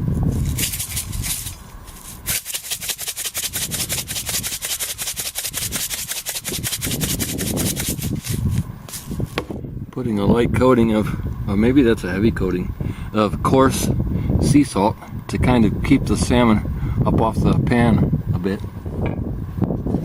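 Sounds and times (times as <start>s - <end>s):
handling rustle: 0.2s - 9.6s
salt grains rattling on skillet: 0.4s - 9.1s.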